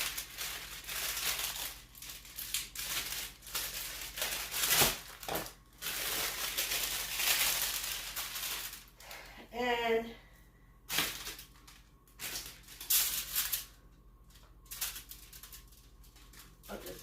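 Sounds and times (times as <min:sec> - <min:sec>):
scissors cutting plastic: 0:00.0 - 0:07.4
plastic wrapper crinkling: 0:00.0 - 0:09.2, 0:10.9 - 0:17.0.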